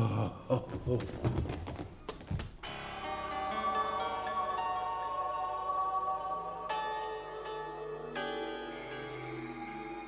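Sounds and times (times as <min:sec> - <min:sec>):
ambient music with bell-like chords: 0:02.6 - 0:10.0.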